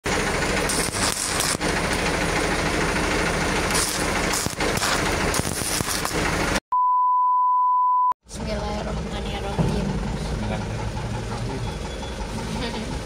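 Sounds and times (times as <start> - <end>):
truck engine and road noise: 0.0 - 6.6, 8.2 - 13.0
high-pitched electronic beep tone: 6.7 - 8.2.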